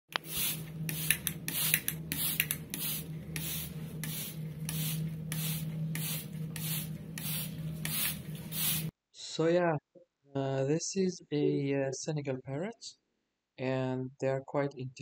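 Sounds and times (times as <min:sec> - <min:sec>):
spray bottle squirting mist: 0:00.1 - 0:08.9
steady low hum: 0:00.1 - 0:08.9.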